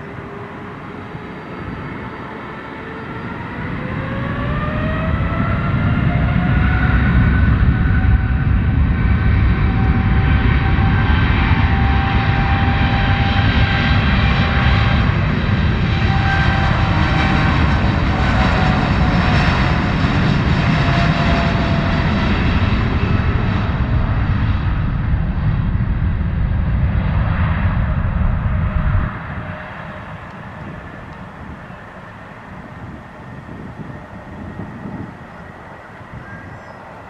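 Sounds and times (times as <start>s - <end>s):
airliner engines passing: 0.0s - 37.0s.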